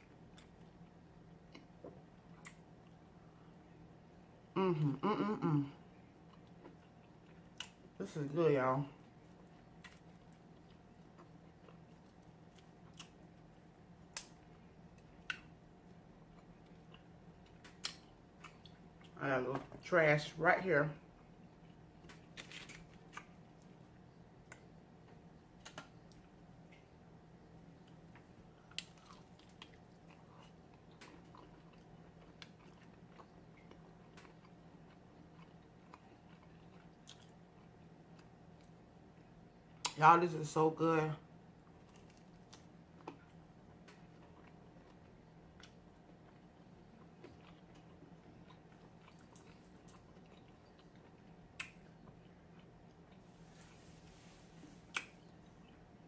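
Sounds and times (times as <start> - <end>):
chewing with crunches: 0.0 - 3.2, 5.6 - 8.2, 8.9 - 19.9, 21.0 - 40.0, 41.6 - 56.0
faint steady hum: 0.0 - 56.0
crisp food mouth clicks: 51.5 - 51.9, 54.9 - 55.3.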